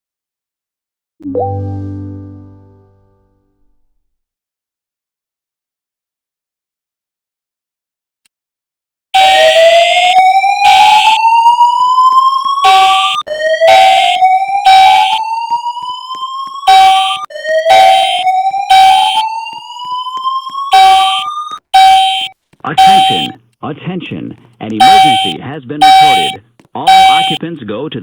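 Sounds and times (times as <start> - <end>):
rising whoop alarm tone: 9.2 - 22.3.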